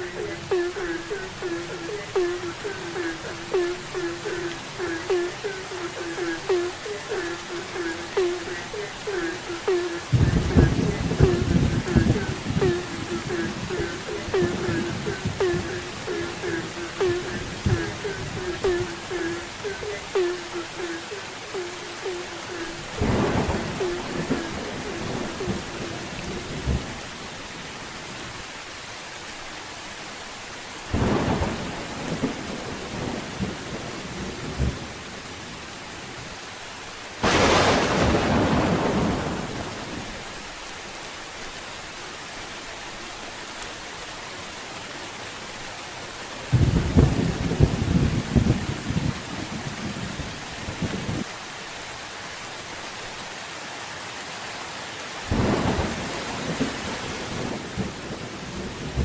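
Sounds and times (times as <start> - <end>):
steady rain: 0.0 - 59.0
thunder: 37.2 - 40.1, 46.5 - 49.2.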